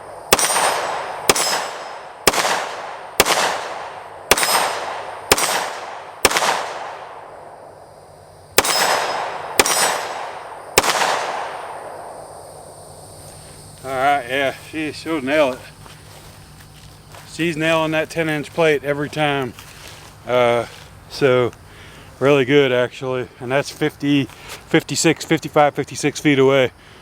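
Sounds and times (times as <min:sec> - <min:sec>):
pistol shots: 0:00.2 - 0:07.5, 0:08.5 - 0:12.2.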